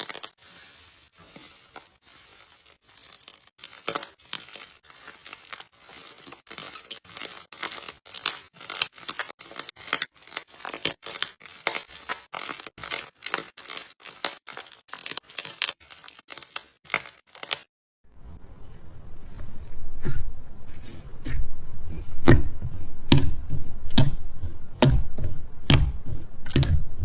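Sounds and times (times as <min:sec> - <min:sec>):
slime squishing: 0:00.0 - 0:17.7, 0:19.2 - 0:27.0.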